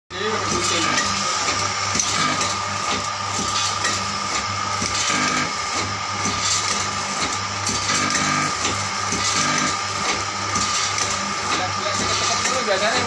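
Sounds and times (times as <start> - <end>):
packaging machine clatter: 6.2 - 13.0.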